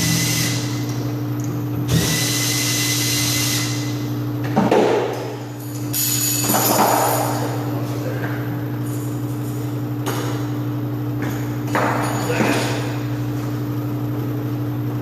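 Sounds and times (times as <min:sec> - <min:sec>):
low mechanical hum: 0:00.0 - 0:15.0.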